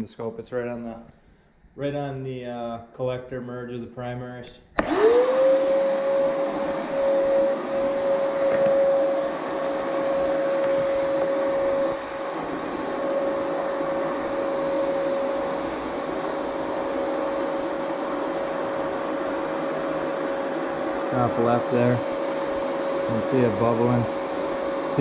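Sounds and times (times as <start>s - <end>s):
small electric motor whining: 4.8s - 17.2s.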